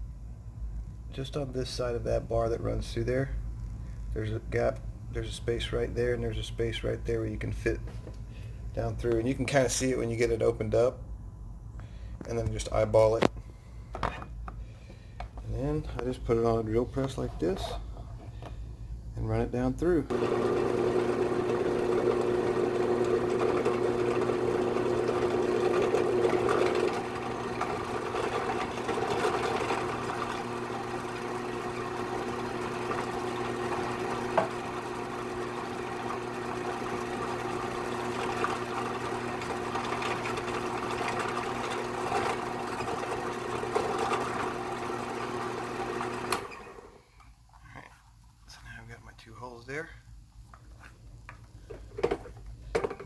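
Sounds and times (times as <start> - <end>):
drill press motor running: 20.1 - 47.0.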